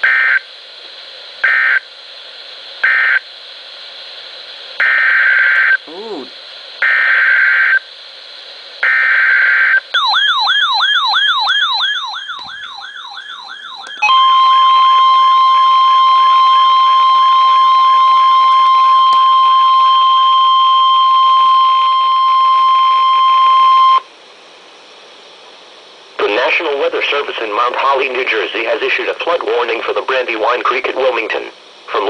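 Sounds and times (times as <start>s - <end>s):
steady warning alarm tone: 0.0s - 0.4s, 1.4s - 1.9s, 2.8s - 3.3s, 4.8s - 5.8s, 6.8s - 7.8s, 8.8s - 24.0s.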